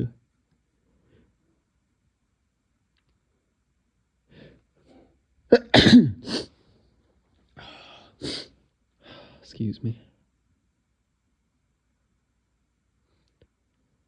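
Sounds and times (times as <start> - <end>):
person sneezing: 4.9 - 6.5, 8.2 - 8.5.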